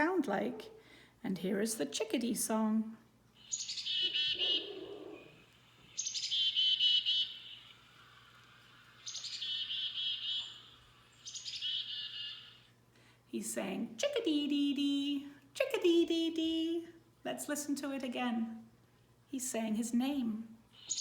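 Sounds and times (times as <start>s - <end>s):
chickadee call through small speaker: 3.4s - 5.2s.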